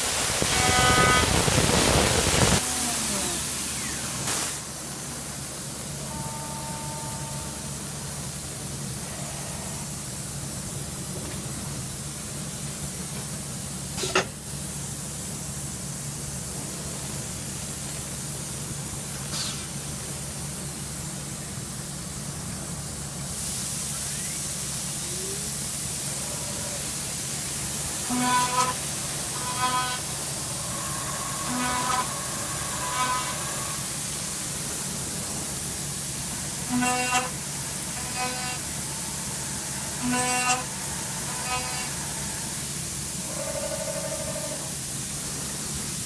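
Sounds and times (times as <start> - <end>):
milling machine running: 27.0 - 43.3
short tones: 28.0 - 34.5, 36.5 - 42.7.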